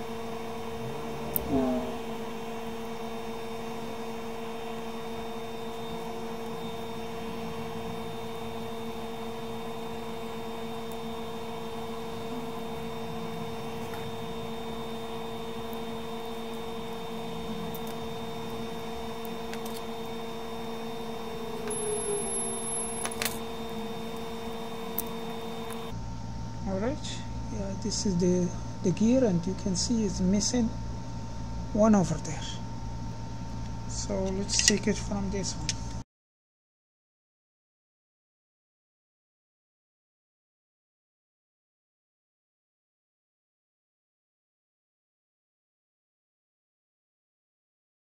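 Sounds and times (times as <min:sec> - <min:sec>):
steady electrical hum: 0:00.0 - 0:36.0.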